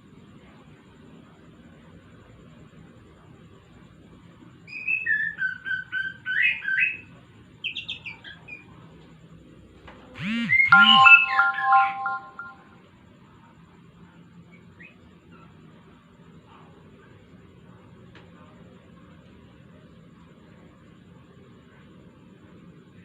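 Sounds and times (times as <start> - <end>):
bird whistling song: 4.7 - 7.1.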